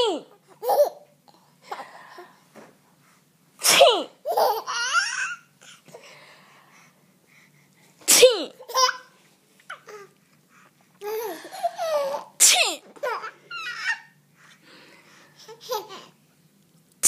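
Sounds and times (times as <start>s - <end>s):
baby laughing: 0.5s - 1.1s, 4.2s - 5.5s, 8.6s - 10.1s, 11.0s - 14.2s, 15.4s - 16.2s
woman sneezing: 3.6s - 4.2s, 8.1s - 8.6s, 12.4s - 12.9s.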